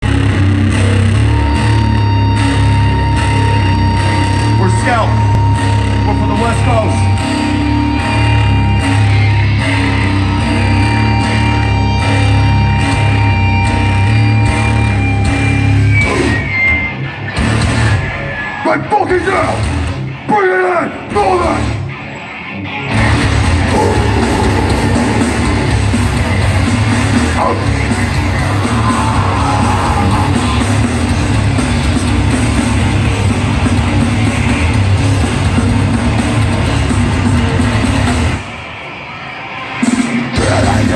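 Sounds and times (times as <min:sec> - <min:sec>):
heavy distorted guitar music: 0:00.0 - 0:40.9
pounding drums: 0:23.0 - 0:38.7.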